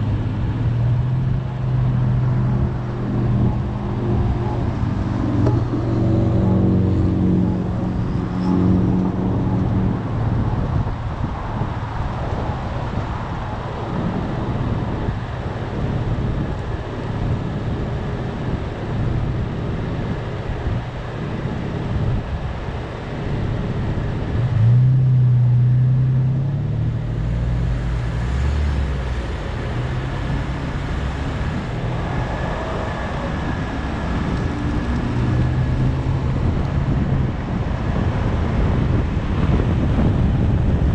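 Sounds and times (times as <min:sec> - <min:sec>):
deep engine hum: 0:00.0 - 0:40.9
road and traffic noise: 0:00.0 - 0:40.9
car engine running: 0:23.1 - 0:40.9.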